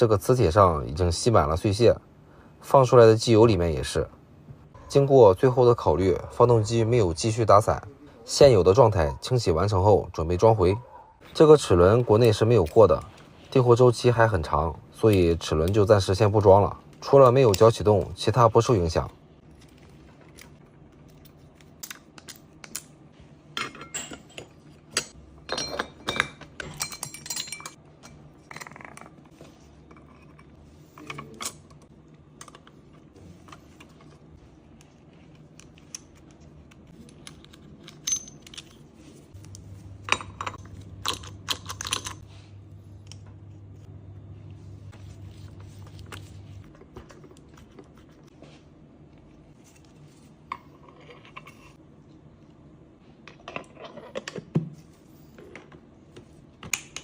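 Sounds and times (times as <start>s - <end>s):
low steady hum: 0.0s - 57.0s
metal parts and tools clinking: 23.6s - 32.6s, 35.6s - 39.1s, 40.0s - 42.2s.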